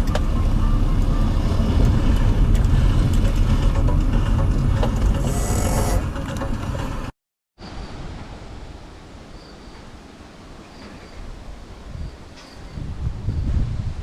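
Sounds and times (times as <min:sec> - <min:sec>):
car road and engine rumble: 0:00.0 - 0:07.2.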